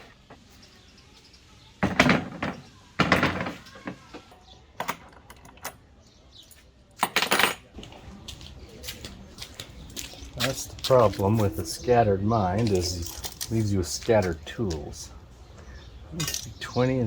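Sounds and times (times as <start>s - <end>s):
metal tools clattering on workbench: 1.8s - 4.0s, 4.8s - 5.8s, 7.0s - 7.7s, 16.2s - 16.6s.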